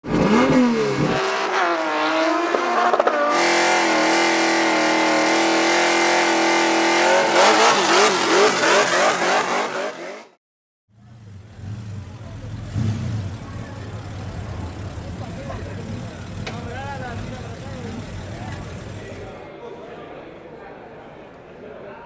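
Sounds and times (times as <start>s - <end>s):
race car engine revving: 0.0s - 19.5s
low engine rumble: 10.9s - 19.5s.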